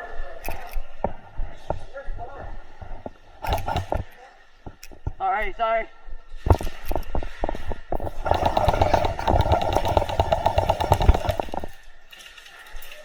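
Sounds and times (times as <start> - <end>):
airsoft gun full-auto burst: 3.4 - 4.2, 8.0 - 12.0.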